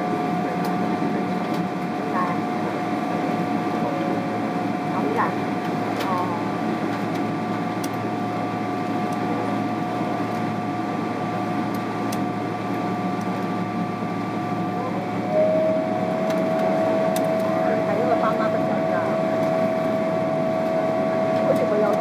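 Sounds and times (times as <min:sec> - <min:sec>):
air conditioning and engine hum: 0:00.0 - 0:22.0
steady whining tones: 0:00.0 - 0:22.0.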